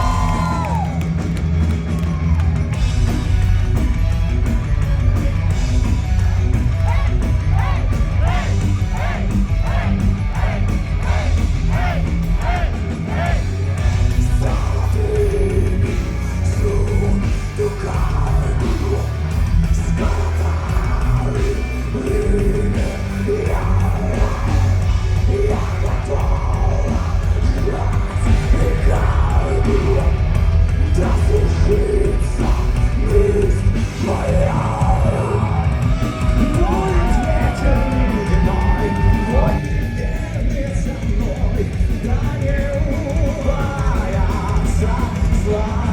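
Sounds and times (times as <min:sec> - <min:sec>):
heavy metal band playing: 0:00.0 - 0:45.9
person singing: 0:14.3 - 0:45.9.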